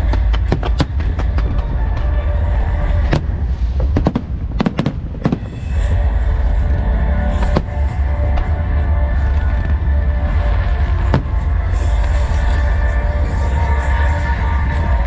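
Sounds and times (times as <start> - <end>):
fireworks bangs: 0.0 - 6.0, 9.2 - 12.6
deep continuous rumble: 0.0 - 15.0
music: 0.0 - 15.0.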